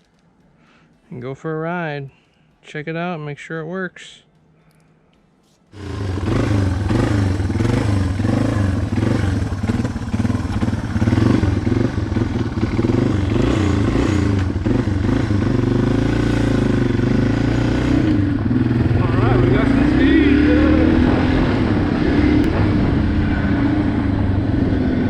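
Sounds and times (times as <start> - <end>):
motorcycle engine revving: 5.7 - 25.0.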